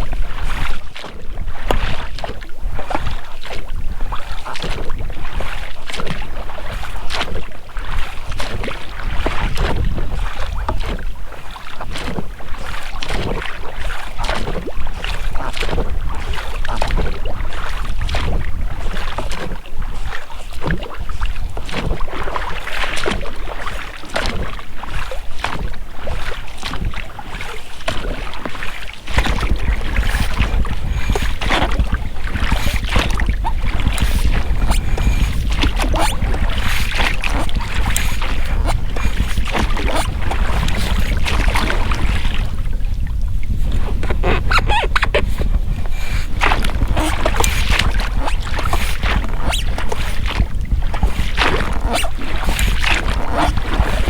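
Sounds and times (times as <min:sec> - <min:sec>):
oars splashing in water: 0:00.0 - 0:54.0
wind rumble on microphone: 0:00.0 - 0:54.0
rowlocks knocking: 0:29.1 - 0:42.0.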